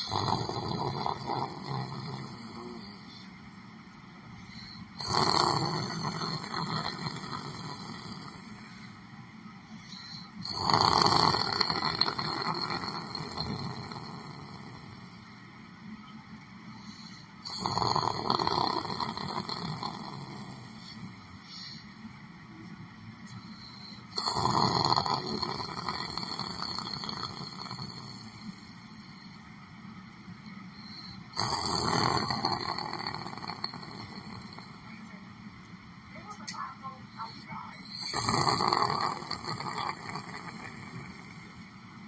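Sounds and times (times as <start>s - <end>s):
person snoring: 0.0s - 3.3s, 4.5s - 8.9s, 9.8s - 15.3s, 16.8s - 21.9s, 23.5s - 29.4s, 30.8s - 35.0s, 37.7s - 41.6s.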